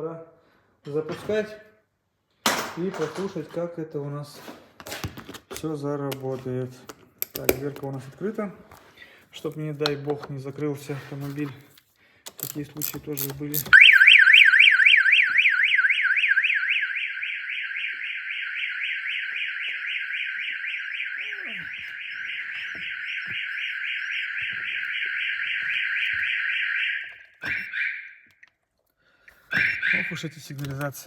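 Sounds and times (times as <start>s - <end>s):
car alarm siren warbling: 13.7s - 28.3s, 29.6s - 30.3s.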